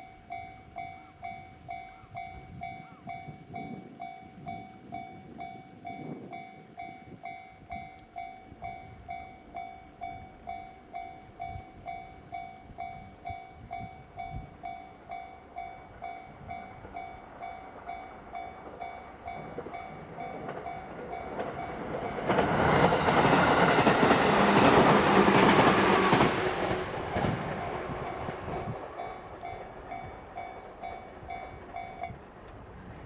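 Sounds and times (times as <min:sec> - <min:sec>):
electric train passing: 0:00.0 - 0:33.0
train wheels clattering on rails: 0:15.9 - 0:32.7.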